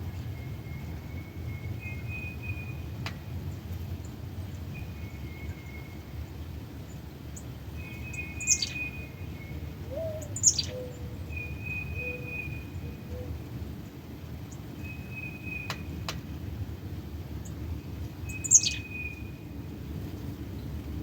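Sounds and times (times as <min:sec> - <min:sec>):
birds whistling: 0:07.8 - 0:13.3, 0:14.8 - 0:15.9, 0:18.3 - 0:19.4.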